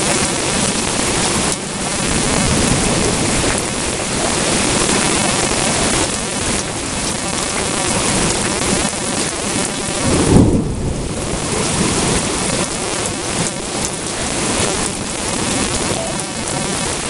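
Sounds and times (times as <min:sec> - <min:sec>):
heavy rain falling: 0:00.0 - 0:17.0
low thunder boom: 0:10.0 - 0:12.3.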